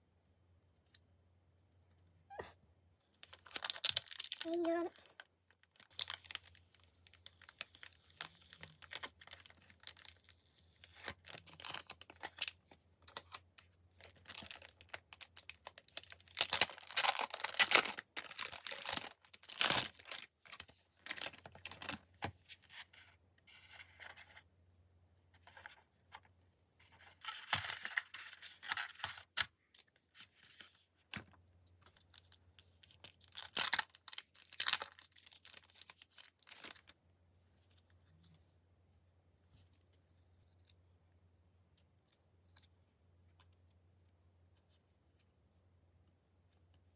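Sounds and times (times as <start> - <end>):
packaging crinkling and tearing: 3.2 - 22.8, 27.2 - 29.4, 32.0 - 36.9.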